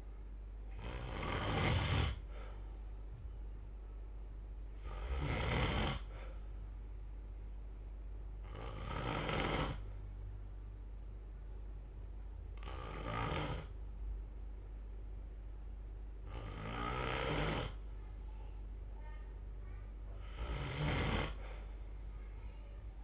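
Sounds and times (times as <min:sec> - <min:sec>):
person snoring: 0:00.7 - 0:02.5, 0:04.8 - 0:06.3, 0:08.4 - 0:10.0, 0:12.6 - 0:13.8, 0:16.3 - 0:17.8, 0:20.2 - 0:21.7.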